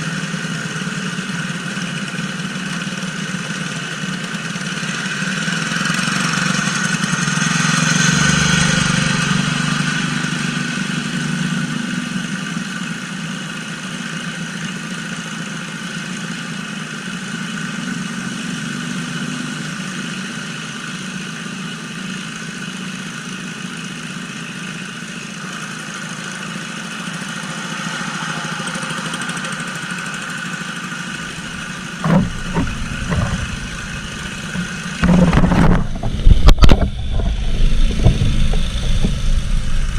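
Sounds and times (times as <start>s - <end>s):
mower engine running: 0.0s - 39.9s
sharp knocks: 31.2s - 39.1s.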